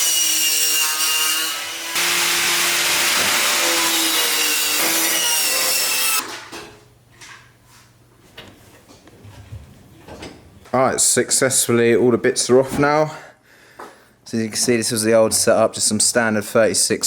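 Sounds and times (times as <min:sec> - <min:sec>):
power tool running: 0:00.9 - 0:06.2.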